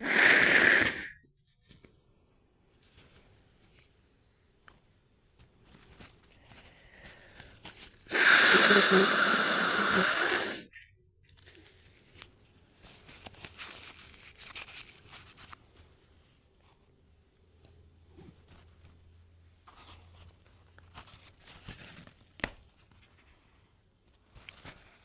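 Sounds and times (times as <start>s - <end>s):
soft breathing: 6.3s - 10.8s
woman sneezing: 8.1s - 10.7s.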